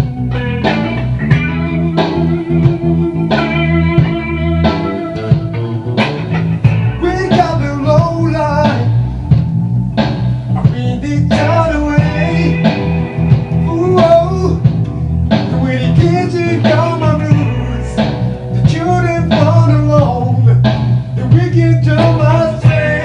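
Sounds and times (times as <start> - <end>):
blues rock song with vocals: 0.0 - 23.0.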